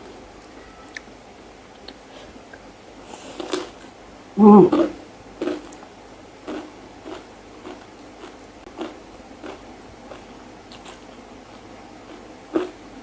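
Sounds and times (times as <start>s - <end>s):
person chewing food: 1.8s - 3.9s, 4.7s - 12.9s.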